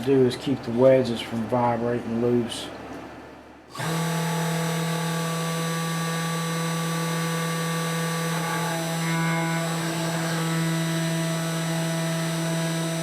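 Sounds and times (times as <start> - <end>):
cnc router motors humming: 3.7 - 13.0.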